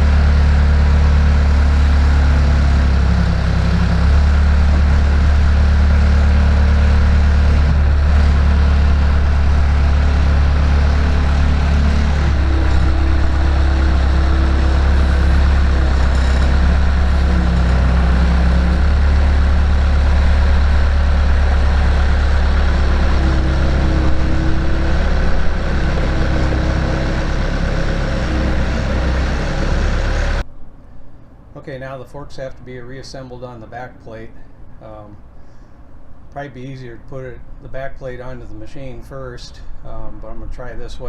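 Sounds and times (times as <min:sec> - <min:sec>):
loader engine running: 0:00.0 - 0:30.5.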